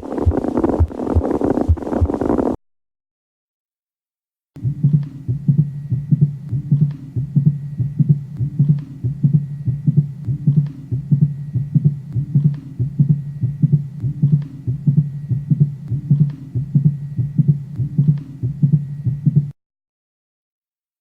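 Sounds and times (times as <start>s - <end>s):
continuous low hum: 0.0s - 2.6s, 4.6s - 19.6s
heartbeat thuds: 0.0s - 2.6s, 4.6s - 19.6s.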